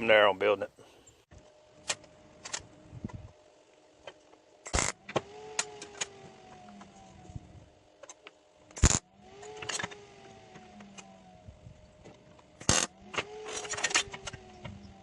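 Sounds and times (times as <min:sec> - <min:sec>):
faint steady hum: 0:00.0 - 0:15.0
steel parts clanking: 0:12.6 - 0:14.5.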